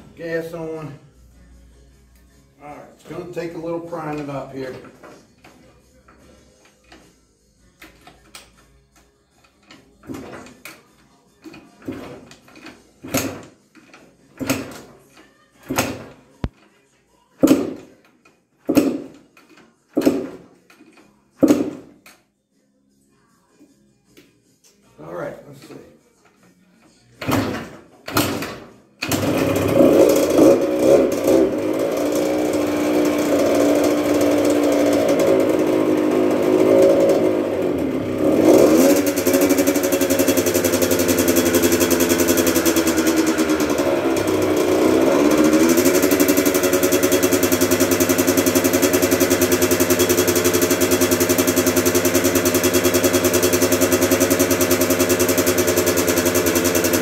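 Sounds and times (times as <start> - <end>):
engine kick-start kicks: 27.2 - 37.4, 38.4 - 57.0
two-stroke engine running: 28.2 - 57.0.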